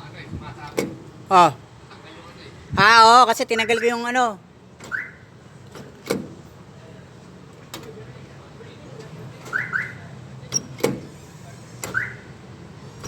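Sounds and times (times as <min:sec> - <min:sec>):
car alarm chirps: 0:03.5 - 0:04.2, 0:04.8 - 0:05.4, 0:09.5 - 0:10.1, 0:11.9 - 0:12.3
door lock actuators clicking: 0:05.7 - 0:06.4, 0:10.5 - 0:11.2.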